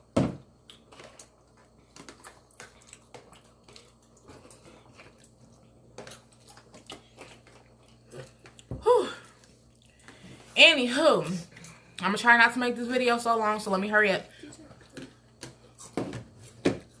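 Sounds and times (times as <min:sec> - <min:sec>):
faint steady hum: 0:00.0 - 0:17.0
person chewing: 0:00.6 - 0:10.3.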